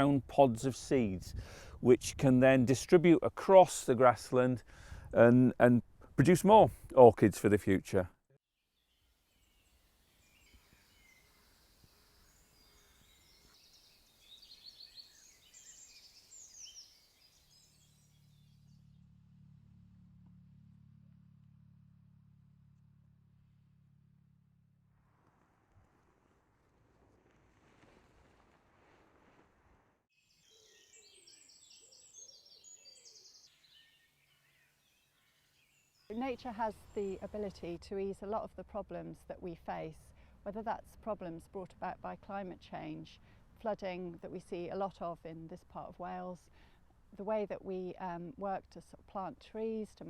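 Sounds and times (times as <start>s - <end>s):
faint songbird song: 8.5s - 19.3s, 30.1s - 40.3s
birds chirping and trilling: 8.8s - 19.0s, 30.3s - 38.3s.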